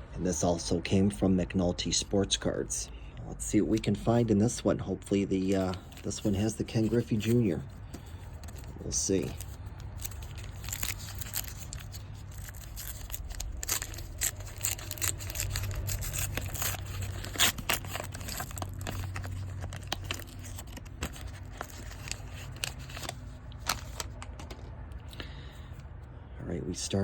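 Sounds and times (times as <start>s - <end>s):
foil wrapper tearing and crinkling: 5.6s - 24.3s.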